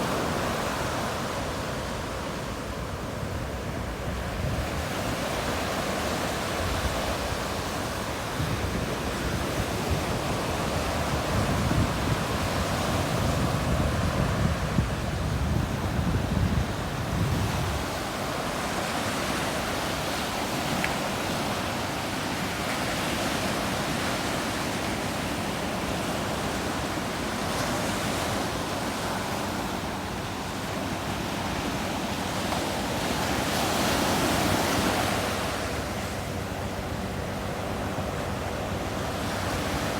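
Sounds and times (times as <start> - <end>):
ocean waves breaking on sand: 0.0 - 39.9.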